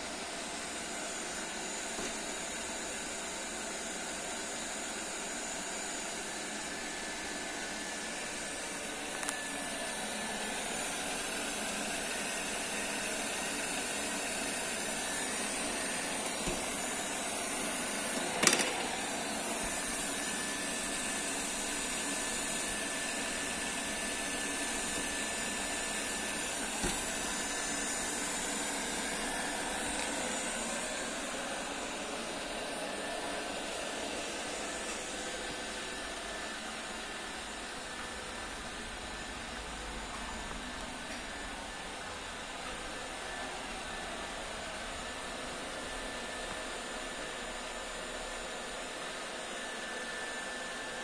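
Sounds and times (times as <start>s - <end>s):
robot vacuum whirring: 0.1s - 5.9s, 6.7s - 39.6s.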